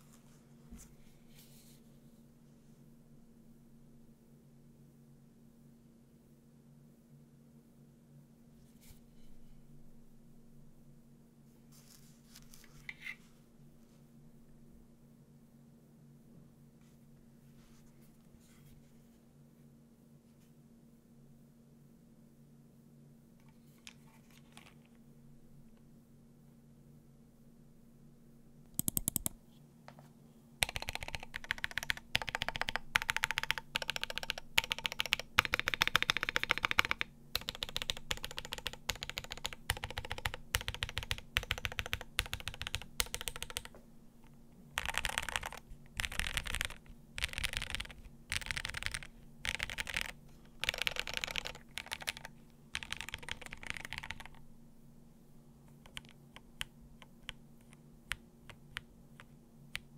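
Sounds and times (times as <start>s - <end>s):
mechanical keyboard typing: 28.7s - 29.4s, 30.6s - 43.8s, 44.8s - 54.4s, 55.8s - 58.8s.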